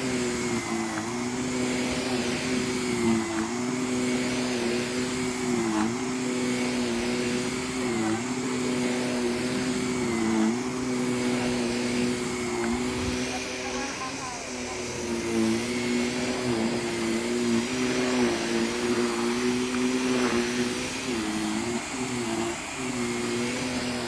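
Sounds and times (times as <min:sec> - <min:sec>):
vacuum cleaner running: 0:00.0 - 0:24.0.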